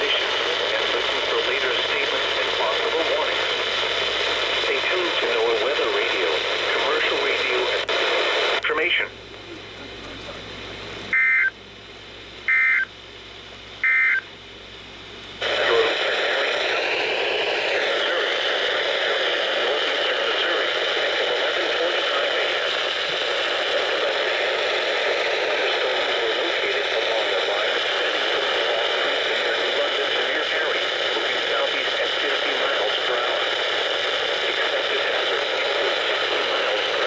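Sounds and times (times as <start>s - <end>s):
radio static hiss: 0.0s - 37.0s
two-tone digital bursts: 11.1s - 11.5s, 13.8s - 14.2s.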